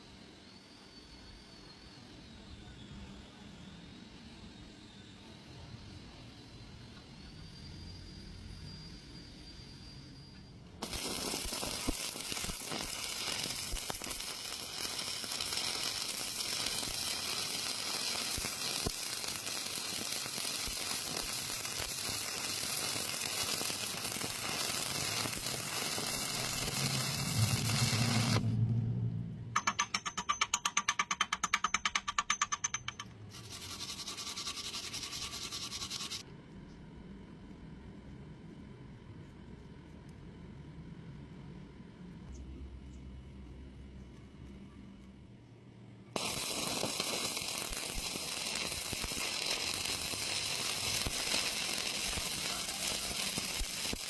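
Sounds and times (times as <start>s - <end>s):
electric arc welding hiss: 10.8s - 28.5s, 33.3s - 36.2s, 46.2s - 54.0s.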